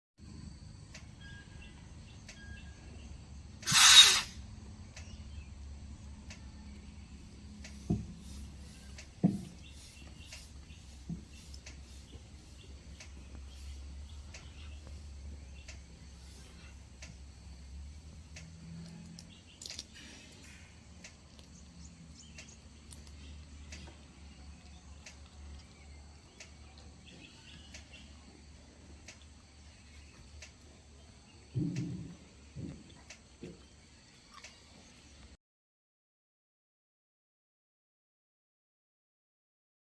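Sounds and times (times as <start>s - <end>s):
faint chirps: 0.6s - 35.4s
bear sneezing: 3.6s - 4.4s
high chirps: 3.6s - 4.4s
sharp clicks: 3.6s - 5.1s
steady low rumble: 4.3s - 19.6s.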